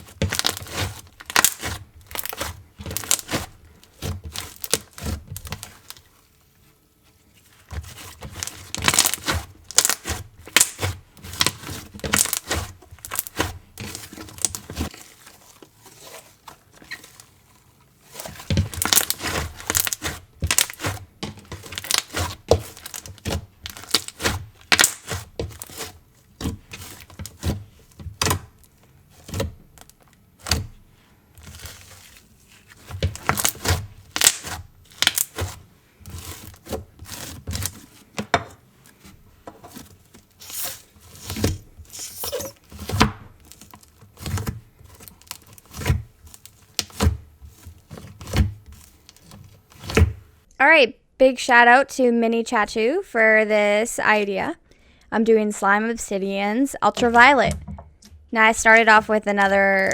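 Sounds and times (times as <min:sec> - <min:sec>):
slime squishing and crackling: 0:00.0 - 0:06.3, 0:07.3 - 0:38.2, 0:39.8 - 0:50.5.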